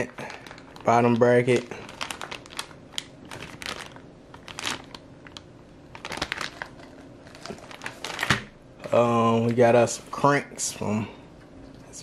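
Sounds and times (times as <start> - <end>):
packaging crinkling: 0.0 - 8.6.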